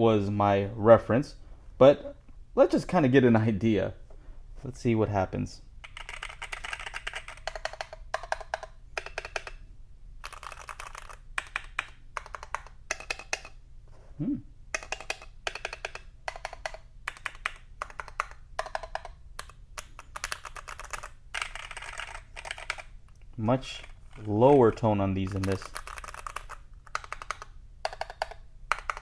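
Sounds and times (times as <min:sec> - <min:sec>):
mechanical keyboard typing: 0:05.8 - 0:09.6, 0:10.2 - 0:13.6, 0:14.7 - 0:23.0, 0:23.7 - 0:29.0.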